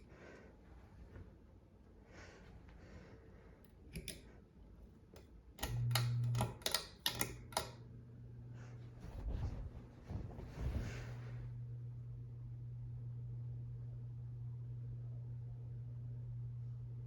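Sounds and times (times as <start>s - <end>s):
ceiling fan motor humming: 1.9s - 17.0s
switch clicks: 3.9s - 4.2s, 5.2s - 7.8s.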